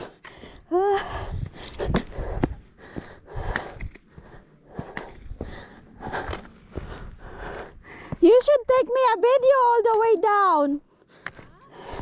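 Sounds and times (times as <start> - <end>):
person breathing hard: 0.0 - 8.2, 10.8 - 12.0.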